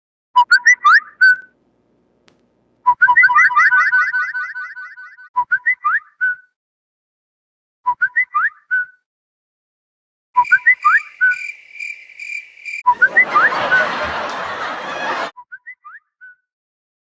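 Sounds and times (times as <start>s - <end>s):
rising whistle chirps: 10.4s - 11.6s.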